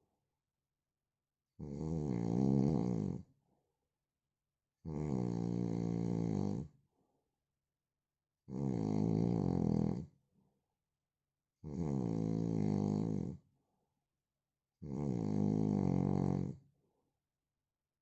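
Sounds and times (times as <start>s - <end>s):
man snoring: 1.6s - 3.2s, 4.9s - 6.7s, 8.5s - 10.1s, 11.6s - 13.4s, 14.8s - 16.6s.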